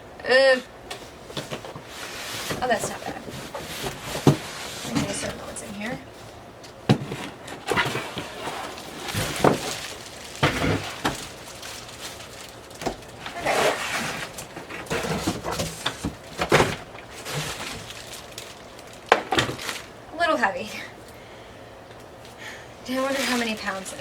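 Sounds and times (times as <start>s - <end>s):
packaging rustling and scraping: 0.9s - 20.0s, 22.9s - 24.0s
sharp knocks and thumps: 6.8s - 8.4s.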